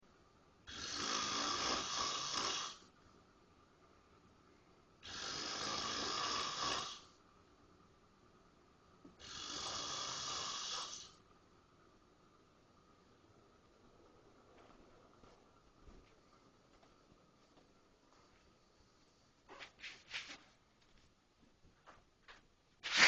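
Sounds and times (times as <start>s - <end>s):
quiet breaths: 0.0s - 21.1s
man snoring loudly: 0.7s - 2.8s, 5.0s - 7.1s, 9.2s - 11.2s.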